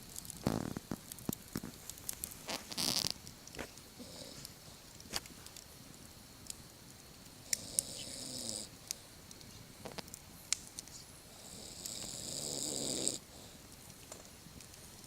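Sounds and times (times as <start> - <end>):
campfire crackling: 0.0 - 15.0
man snoring: 7.6 - 8.7, 11.4 - 13.2.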